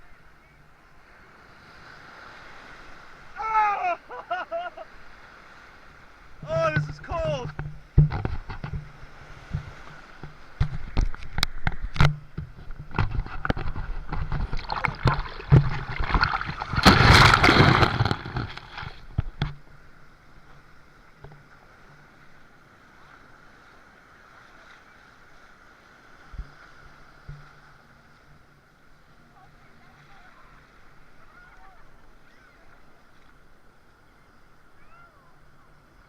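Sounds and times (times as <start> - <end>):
sea water splashing: 0.2 - 36.0
faint steady hiss: 18.0 - 36.0.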